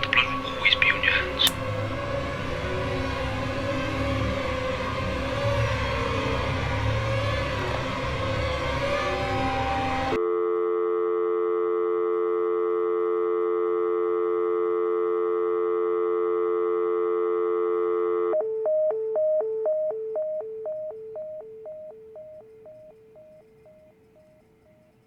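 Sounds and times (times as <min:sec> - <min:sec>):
telephone dial tone: 0:00.0 - 0:01.7, 0:09.4 - 0:18.5
busy signal beeps: 0:10.4 - 0:24.0.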